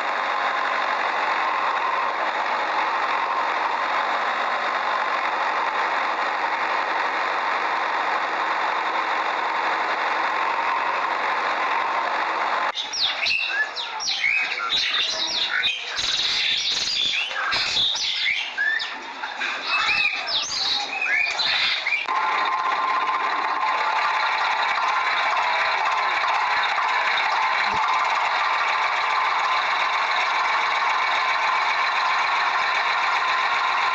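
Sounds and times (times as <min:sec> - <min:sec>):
engine-like running noise: 0:00.0 - 0:33.9
many birds chirping: 0:12.7 - 0:22.1.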